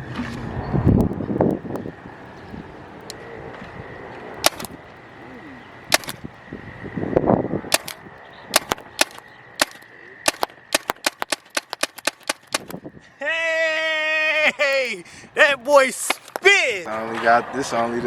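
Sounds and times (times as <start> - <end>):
paintball gun firing: 4.4 - 4.8, 5.9 - 6.3, 7.7 - 12.8, 16.0 - 16.8.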